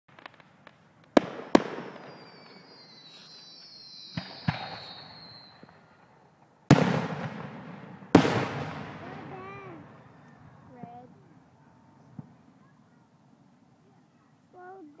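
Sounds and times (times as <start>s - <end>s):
fireworks bangs: 0.1s - 11.2s, 12.0s - 12.8s
falling whistle: 2.1s - 5.9s.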